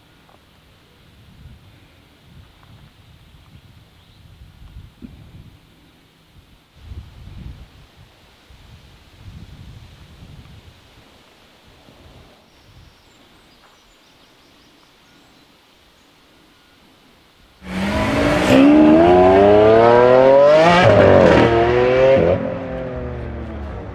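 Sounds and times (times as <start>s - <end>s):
faint outdoor background: 0.0s - 23.9s
car engine accelerating hard: 17.6s - 23.9s.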